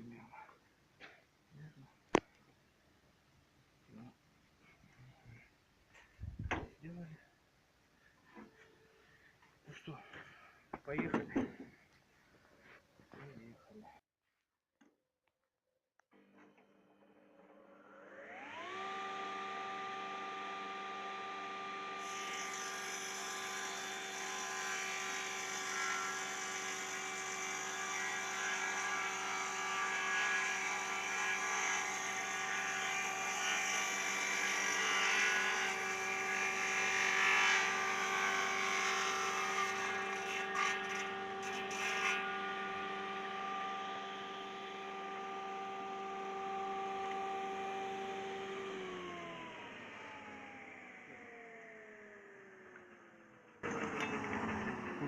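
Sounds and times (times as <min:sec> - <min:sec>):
circular saw cutting board: 0:16.2 - 0:55.0
woodworking machine running: 0:17.1 - 0:55.0.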